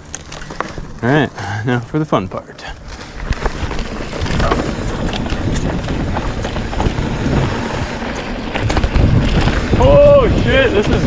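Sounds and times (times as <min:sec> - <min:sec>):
tyres rumbling over dirt: 0:00.0 - 0:11.0
wind buffeting microphone: 0:02.8 - 0:11.0.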